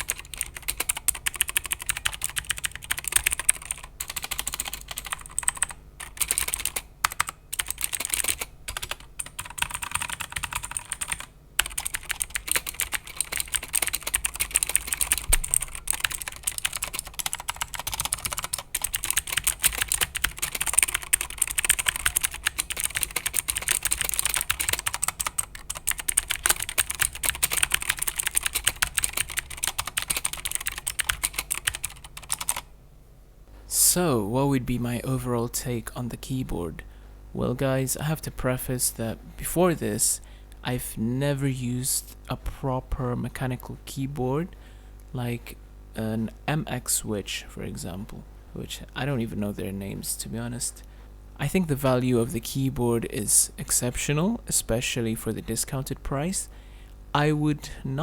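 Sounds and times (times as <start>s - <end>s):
fast typing on keyboard: 0.0s - 32.6s.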